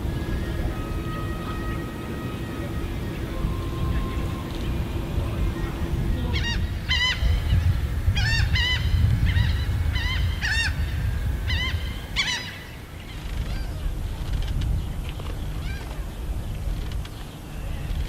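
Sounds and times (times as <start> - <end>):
low rumble: 0.0 - 18.0
goose-like bird calls: 0.1 - 13.8.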